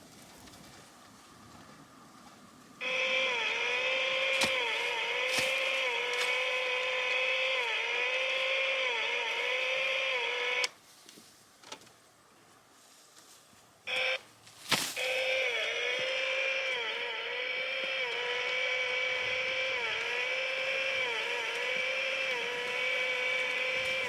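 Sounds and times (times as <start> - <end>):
small motor running: 2.8 - 10.8, 15.0 - 24.0.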